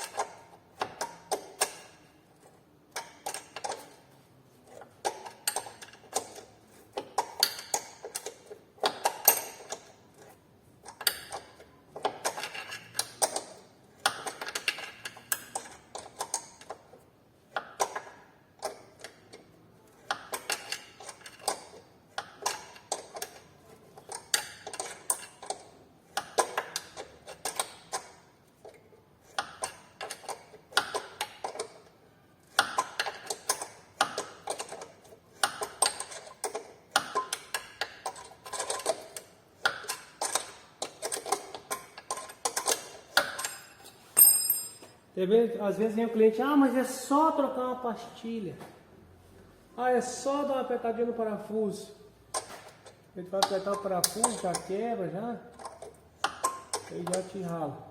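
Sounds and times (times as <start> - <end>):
hand ratchet clicking: 52.4 - 54.8.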